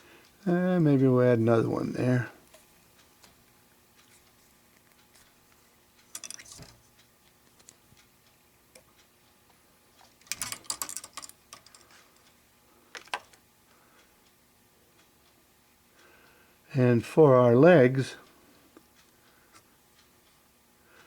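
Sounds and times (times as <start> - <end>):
fly-tying tools clicking and rattling: 6.1 - 6.7, 10.2 - 12.3.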